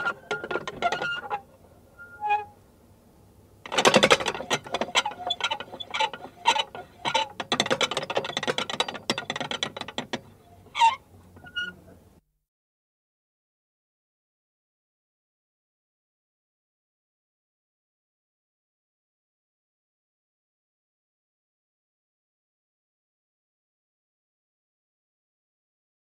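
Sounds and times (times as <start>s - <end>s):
prayer wheel metal rattling: 0.0s - 1.4s, 3.7s - 10.9s
turning wheel squeaks and creaks: 0.0s - 2.6s, 3.7s - 11.9s.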